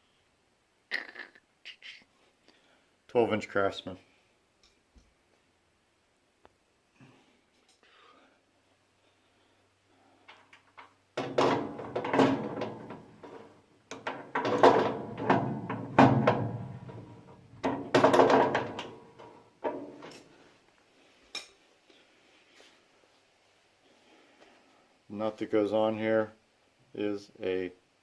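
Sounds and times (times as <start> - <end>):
metal cabinet clanking and rattling: 11.2 - 20.1.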